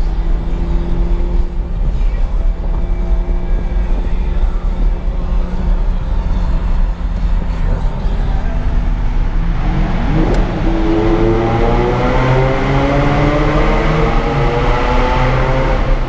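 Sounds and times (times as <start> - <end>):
deep engine drone: 0.0 - 16.0.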